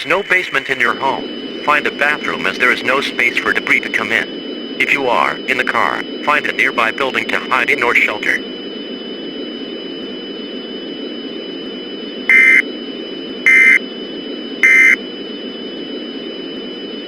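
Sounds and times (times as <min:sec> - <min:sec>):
digital data tone bursts: 0:00.0 - 0:08.4, 0:12.3 - 0:12.6, 0:14.6 - 0:15.0
steady background hiss: 0:00.0 - 0:08.4
thin high whine: 0:00.0 - 0:17.0.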